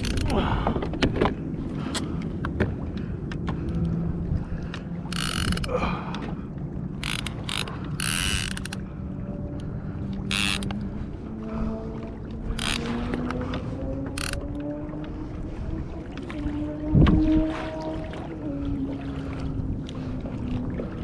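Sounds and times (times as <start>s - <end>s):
fishing reel ratcheting: 0.0s - 0.3s, 5.1s - 5.7s, 7.0s - 8.8s, 10.3s - 10.8s, 12.6s - 13.0s, 14.2s - 14.5s.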